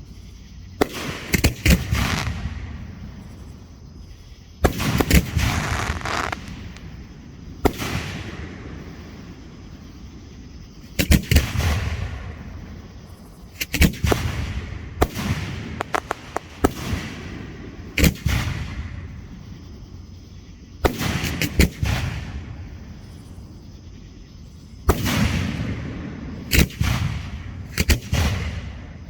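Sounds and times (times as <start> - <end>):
fireworks cracks: 0.8 - 3.2, 4.6 - 19.3
fireworks bangs with rolling echo: 0.8 - 23.6, 24.8 - 29.0.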